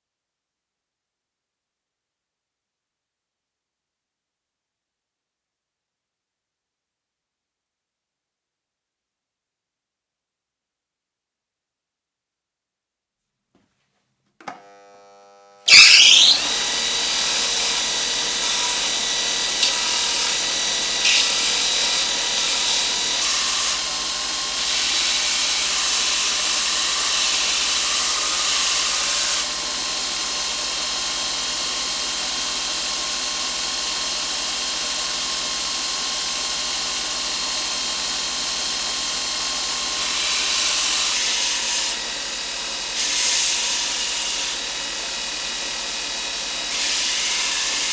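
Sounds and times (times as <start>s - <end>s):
electric power tool whining: 14.4s - 47.9s.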